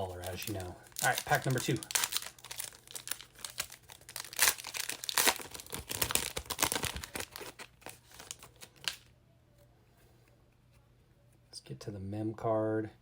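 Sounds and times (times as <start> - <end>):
plastic wrapper tearing and crinkling: 0.0 - 9.1.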